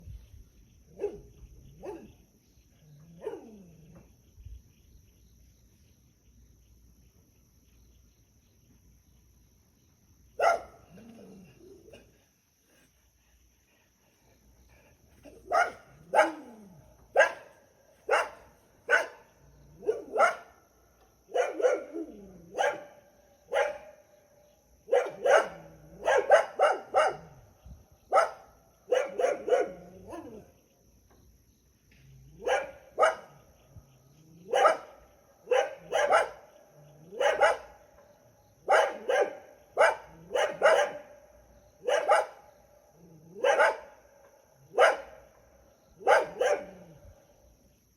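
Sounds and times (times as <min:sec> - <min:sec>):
dog barking: 0:00.9 - 0:02.2, 0:03.2 - 0:03.7, 0:10.4 - 0:11.0, 0:15.3 - 0:20.6, 0:21.3 - 0:24.0, 0:24.9 - 0:27.4, 0:28.1 - 0:30.4, 0:32.4 - 0:33.4, 0:34.4 - 0:37.8, 0:38.6 - 0:41.2, 0:41.8 - 0:42.5, 0:43.2 - 0:44.0, 0:44.7 - 0:45.3, 0:46.0 - 0:46.9.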